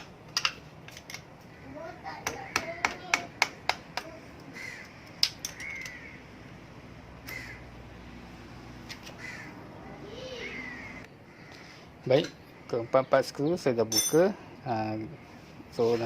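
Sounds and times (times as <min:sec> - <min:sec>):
crow cawing: 0:01.5 - 0:03.1, 0:04.5 - 0:06.3, 0:07.2 - 0:07.7, 0:09.0 - 0:11.9
tools clicking on metal: 0:05.1 - 0:06.0.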